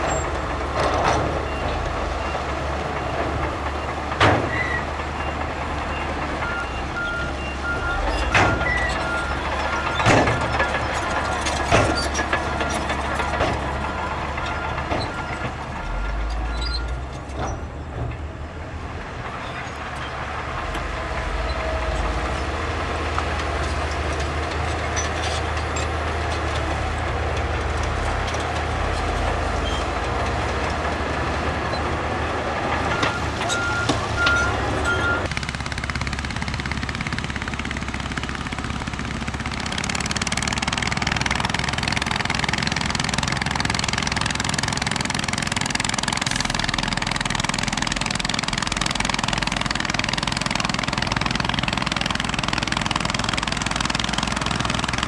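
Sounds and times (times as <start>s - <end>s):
heavy machinery engine drone: 0.0s - 55.0s
reversing alarm beeping: 1.4s - 17.0s, 32.8s - 35.3s.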